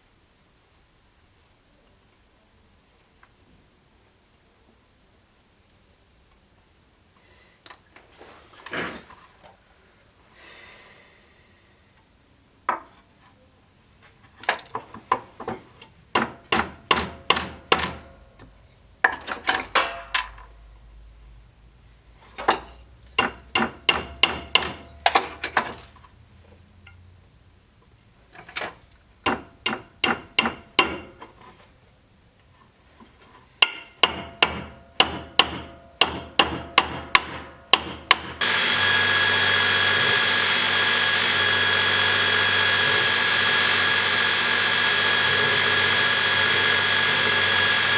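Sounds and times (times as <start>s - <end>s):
small hammer tapping: 16.2s - 18.5s, 22.5s - 25.7s, 29.3s - 31.3s, 33.6s - 38.4s.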